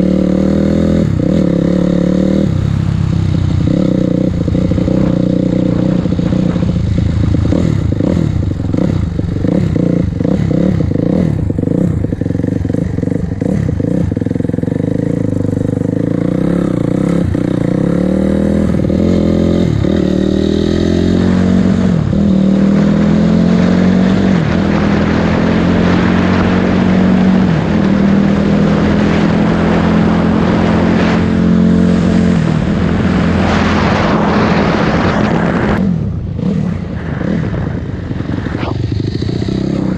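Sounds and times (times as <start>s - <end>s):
motorcycle engine running: 0.0s - 39.9s
wind noise: 0.0s - 39.9s.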